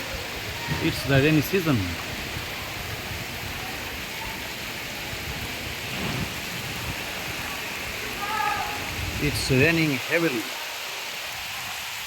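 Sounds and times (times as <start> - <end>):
heavy rain hissing: 0.0 - 12.0.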